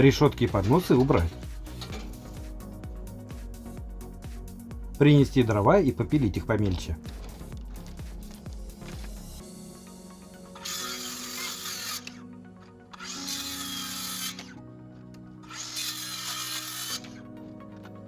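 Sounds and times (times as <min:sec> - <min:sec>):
background music: 0:00.0 - 0:18.0
power saw cutting firewood: 0:10.6 - 0:12.3, 0:12.9 - 0:14.6, 0:15.4 - 0:17.3.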